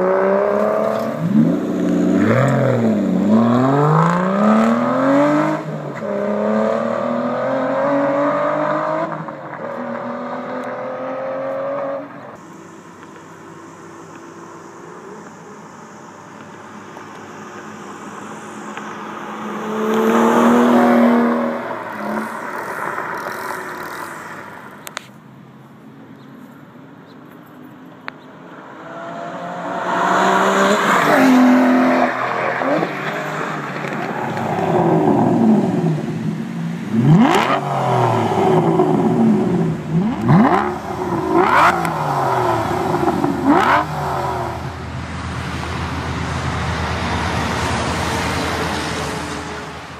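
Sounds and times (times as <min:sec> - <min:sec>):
car engine revving and accelerating: 0:00.0 - 0:12.3, 0:18.0 - 0:24.6, 0:28.5 - 0:49.9.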